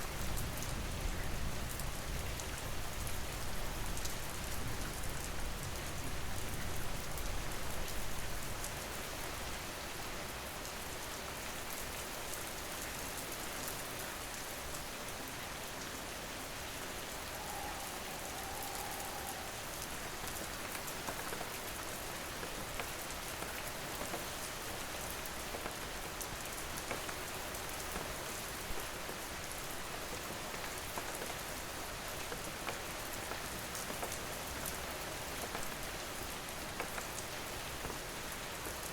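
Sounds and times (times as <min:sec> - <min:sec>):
steady rain falling: 0:00.0 - 0:38.9.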